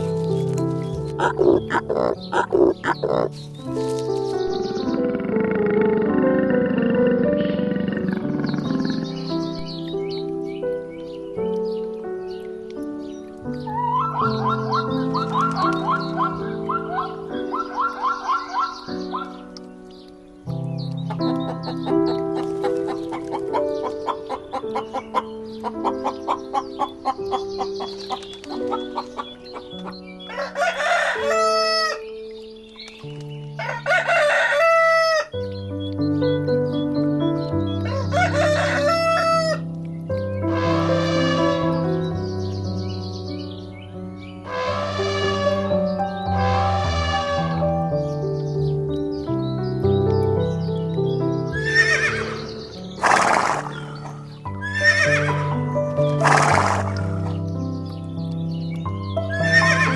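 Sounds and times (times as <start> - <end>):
background music: 0.0 - 59.9
rooster crowing: 30.3 - 32.0, 33.6 - 35.3, 37.9 - 39.6
horse whinnying: 40.5 - 41.9, 44.5 - 45.8, 51.6 - 55.6, 56.2 - 57.3, 59.3 - 59.9.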